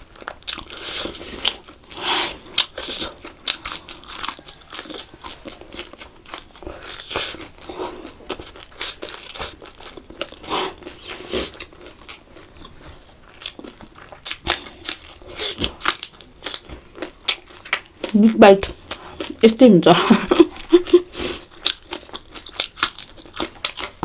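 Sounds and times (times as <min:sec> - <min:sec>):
person chewing and crunching food: 0:00.0 - 0:24.0.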